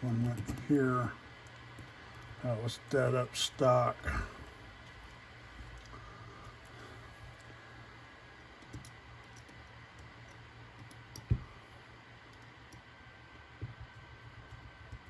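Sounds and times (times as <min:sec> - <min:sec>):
small parts clicking and tapping: 0:08.4 - 0:11.5.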